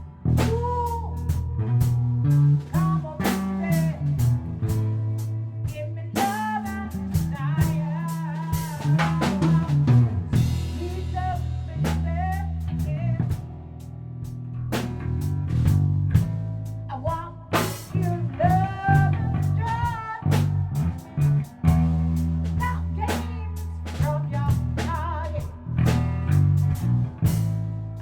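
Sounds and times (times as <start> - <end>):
bass guitar: 0.0 - 28.0
drum kit: 0.0 - 28.0.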